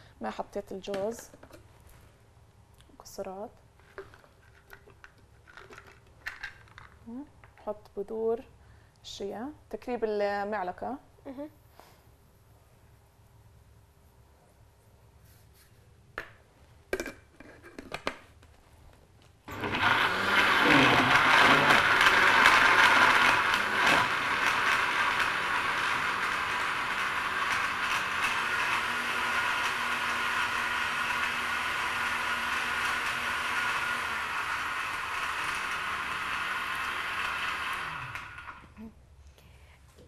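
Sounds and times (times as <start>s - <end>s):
electric blender running: 19.5s - 38.8s.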